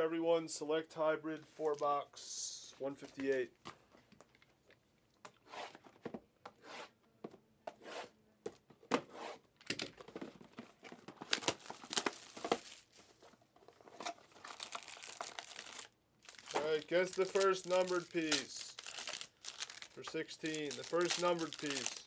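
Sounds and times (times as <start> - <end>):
wrappers ripping and crinkling: 11.2 - 13.0, 14.3 - 22.0.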